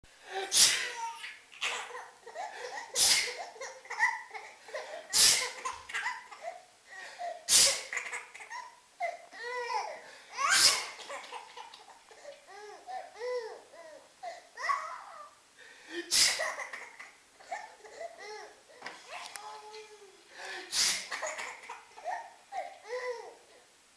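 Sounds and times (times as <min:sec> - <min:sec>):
person sneezing loudly: 0:00.3 - 0:01.9, 0:02.8 - 0:03.6, 0:05.1 - 0:05.8, 0:07.5 - 0:08.1, 0:10.4 - 0:11.4, 0:16.0 - 0:16.6, 0:20.6 - 0:21.6.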